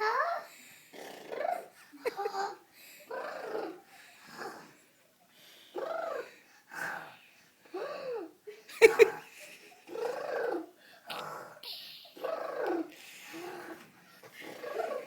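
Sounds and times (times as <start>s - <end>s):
wheezy whistling snores: 0.9s - 1.6s.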